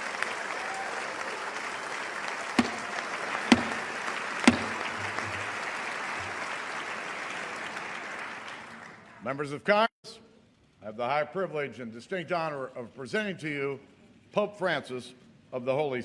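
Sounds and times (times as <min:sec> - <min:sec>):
sharp loud claps: 0:00.0 - 0:09.0
crowd applauding: 0:00.0 - 0:09.4.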